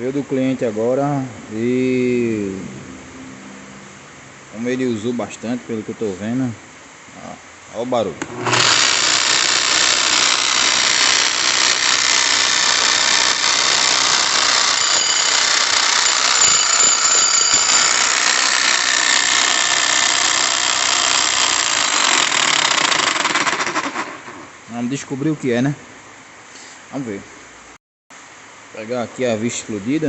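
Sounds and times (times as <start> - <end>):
high whining tones: 8.2 - 23.3
demolition hammer running: 8.2 - 24.4.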